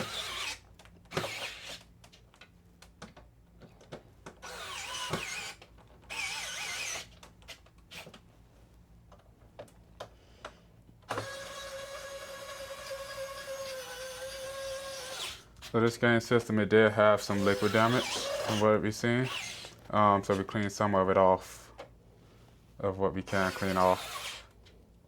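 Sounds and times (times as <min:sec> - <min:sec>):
electric screwdriver motor whining: 0:00.0 - 0:01.8, 0:04.4 - 0:07.1, 0:11.1 - 0:15.4, 0:17.3 - 0:18.6, 0:19.2 - 0:19.8, 0:23.3 - 0:24.4.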